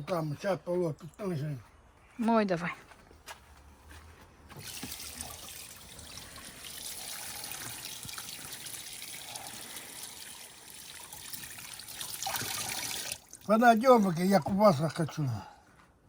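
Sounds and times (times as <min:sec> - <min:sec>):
running water splashing: 0:04.6 - 0:14.8.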